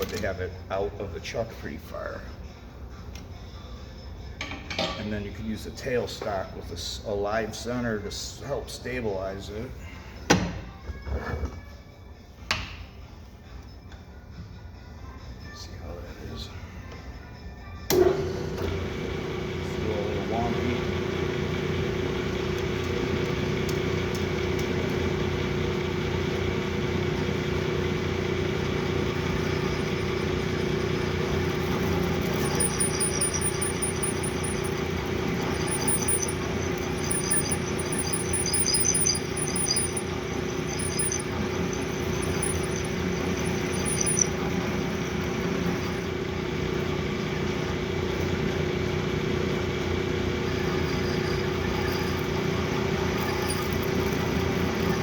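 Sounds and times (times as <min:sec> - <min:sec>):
metal lathe humming: 0:18.0 - 0:55.0
short high-pitched squeals: 0:28.6 - 0:46.2, 0:50.4 - 0:55.0.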